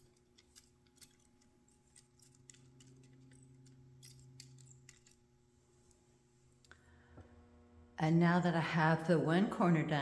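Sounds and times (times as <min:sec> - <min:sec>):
low steady hum: 0:00.0 - 0:10.0.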